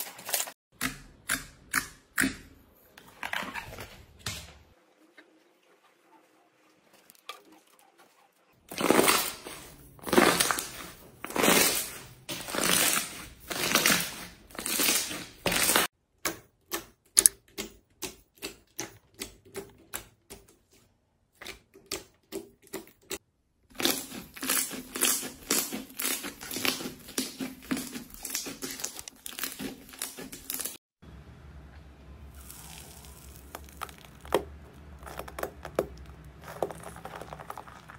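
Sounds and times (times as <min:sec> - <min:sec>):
slime squishing: 0:08.7 - 0:15.9, 0:21.3 - 0:30.8, 0:32.3 - 0:37.9
slime crackling: 0:32.3 - 0:37.9.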